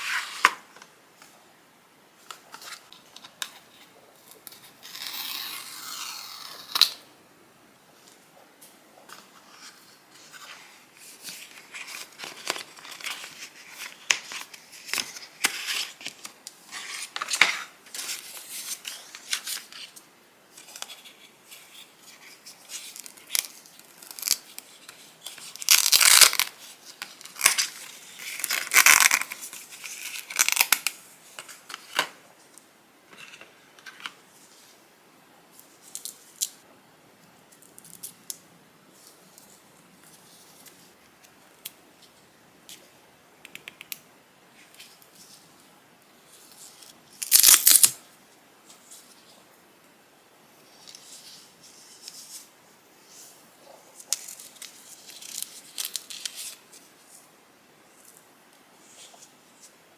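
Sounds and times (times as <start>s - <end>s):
wrapping rustling and crinkling: 9.1s - 32.5s, 46.2s - 48.0s, 50.7s - 57.3s.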